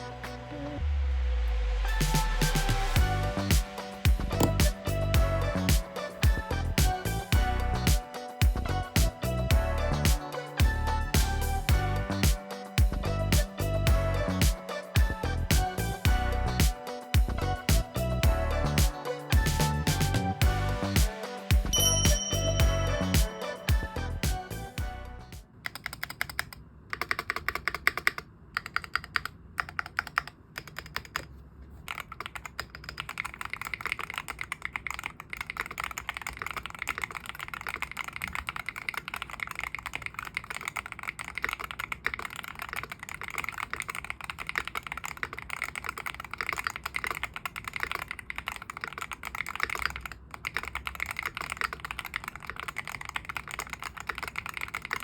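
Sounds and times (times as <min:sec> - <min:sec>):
keyboard typing: 0:03.5 - 0:04.9, 0:07.7 - 0:11.5, 0:25.6 - 0:55.0.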